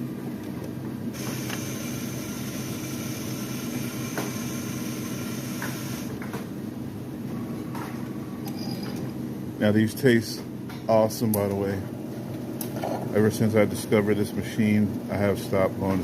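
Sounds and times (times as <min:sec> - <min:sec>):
coffee machine motor and pump hum: 0:00.0 - 0:06.6, 0:10.9 - 0:16.0.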